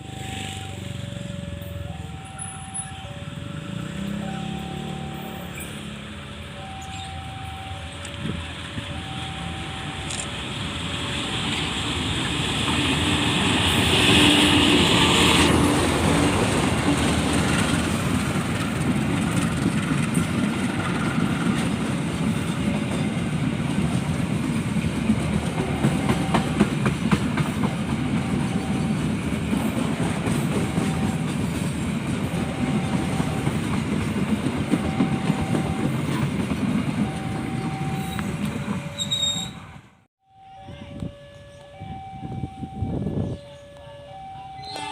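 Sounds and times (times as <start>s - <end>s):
two-note warning tone: 0.0s - 10.3s, 34.8s - 36.0s, 37.0s - 39.2s, 40.2s - 44.9s
train cars rumbling past: 0.0s - 40.1s
wheels clicking over rail joints: 15.4s - 39.5s.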